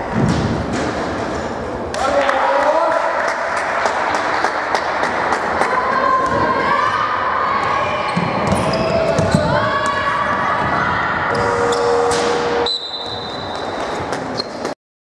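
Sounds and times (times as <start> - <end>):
voices in echoing hall: 0.0 - 14.1
basketballs bouncing on gym floor: 7.6 - 10.9.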